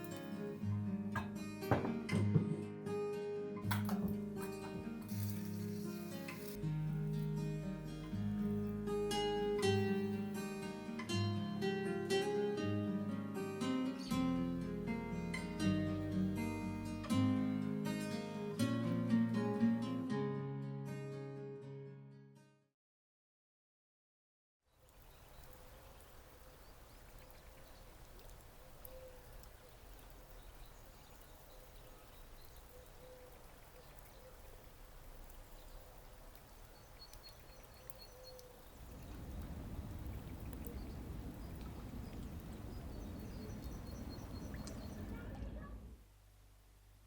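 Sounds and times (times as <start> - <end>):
high bird chirps: 36.7 - 45.2.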